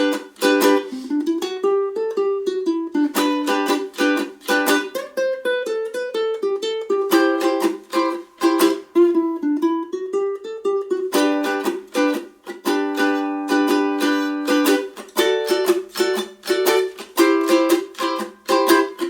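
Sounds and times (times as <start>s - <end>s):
ukulele playing: 0.0s - 19.0s.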